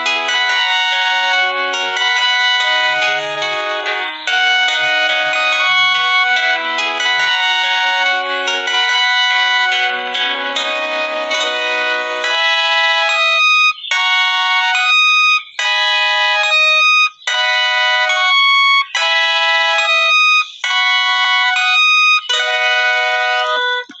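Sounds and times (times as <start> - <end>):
looped synthesized chord phrase: 1.2 - 12.4.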